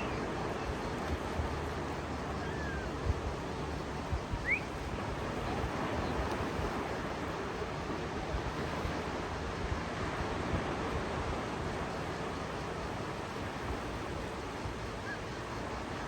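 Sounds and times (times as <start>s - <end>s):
sea waves washing on shore: 0.0s - 16.0s.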